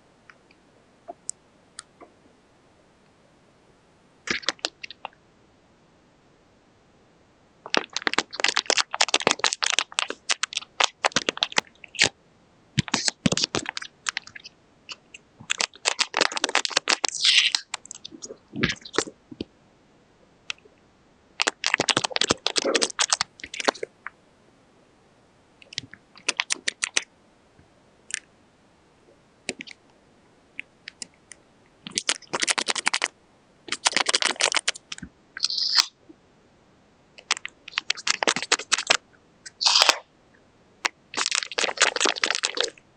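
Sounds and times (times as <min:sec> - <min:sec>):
paper crinkling: 0:07.7 - 0:12.1, 0:12.8 - 0:14.5, 0:15.4 - 0:19.1, 0:21.4 - 0:23.9, 0:26.2 - 0:27.0, 0:31.9 - 0:33.1, 0:33.7 - 0:35.9, 0:37.2 - 0:39.0, 0:41.1 - 0:42.8.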